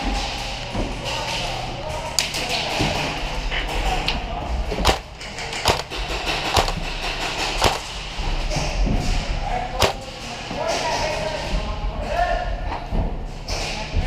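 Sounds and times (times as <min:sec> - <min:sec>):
low background hum: 0:00.0 - 0:14.0
airsoft gun shots: 0:04.8 - 0:08.0, 0:09.8 - 0:10.1.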